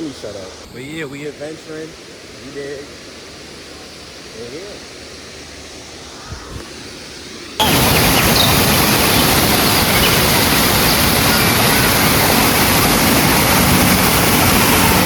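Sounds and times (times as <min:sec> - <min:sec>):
waterfall rushing: 0:07.6 - 0:15.0.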